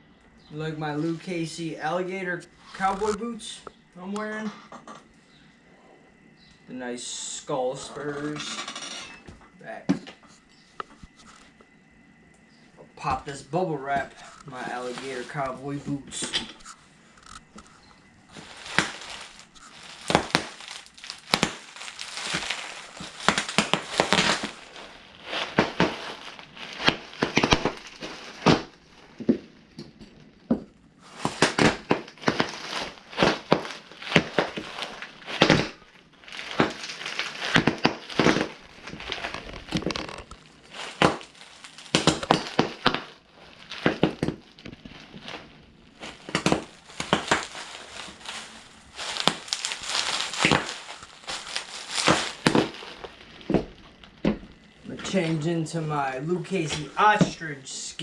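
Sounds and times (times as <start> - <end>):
plastic crinkling: 13.1 - 58.0
bubble wrap popping: 14.0 - 55.5.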